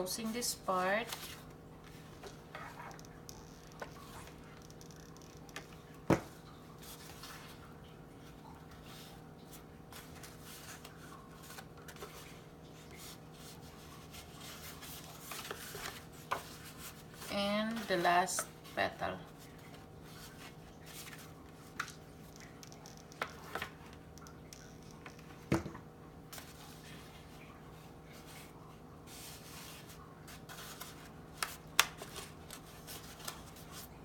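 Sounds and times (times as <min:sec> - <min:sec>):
paper rustling: 0:08.8 - 0:21.9, 0:29.1 - 0:33.9.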